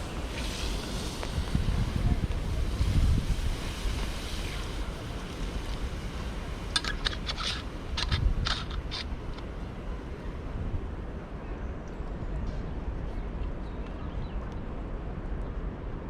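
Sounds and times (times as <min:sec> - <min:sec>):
wind buffeting microphone: 0:00.0 - 0:16.0
small sharp clicks and scrapes: 0:06.7 - 0:09.5.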